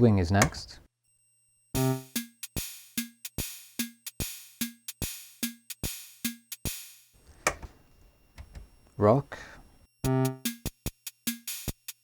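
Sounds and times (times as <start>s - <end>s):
electronic drum pattern: 1.8s - 6.4s, 10.1s - 11.8s.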